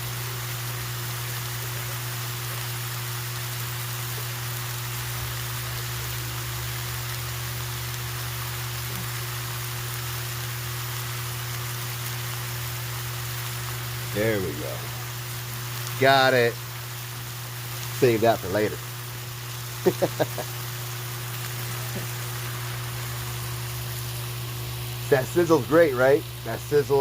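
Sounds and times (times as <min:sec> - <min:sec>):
constant low hum: 0:00.0 - 0:27.0
meat sizzling on a griddle: 0:00.0 - 0:27.0.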